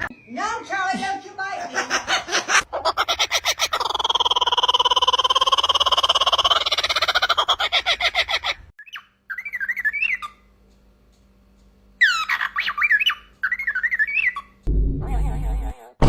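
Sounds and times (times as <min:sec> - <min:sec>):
bird calling: 0:01.6 - 0:10.5, 0:12.0 - 0:14.6.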